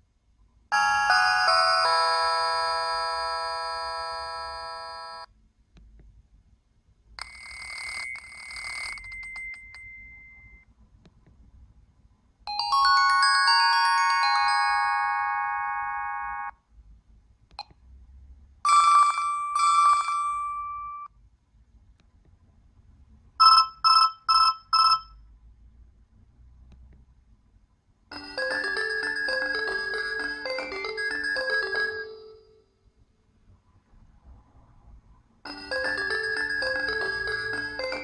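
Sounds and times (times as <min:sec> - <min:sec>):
bell-style phone ringtones: 0:00.7 - 0:05.3, 0:07.2 - 0:10.7, 0:12.5 - 0:16.5, 0:18.7 - 0:21.1, 0:23.4 - 0:25.2, 0:28.1 - 0:32.7, 0:35.5 - 0:38.0.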